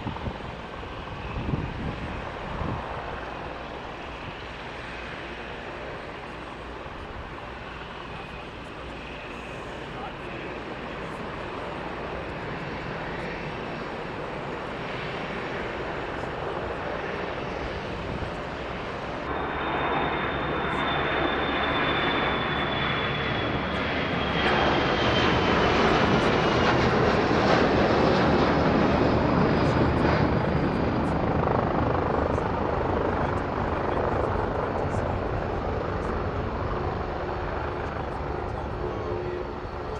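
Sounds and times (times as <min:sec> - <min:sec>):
airliner engines running: 0:00.0 - 0:39.9.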